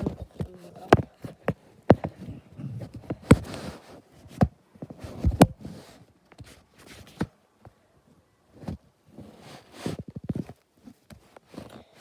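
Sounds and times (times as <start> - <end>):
rustling handling noise: 0.0 - 12.0
sharp knocks and thuds: 1.9 - 3.7.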